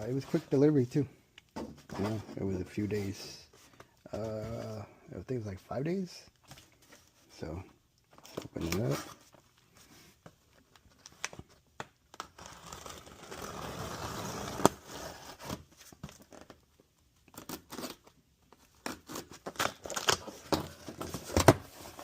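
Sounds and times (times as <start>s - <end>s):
packaging tearing and crinkling: 18.8s - 20.5s.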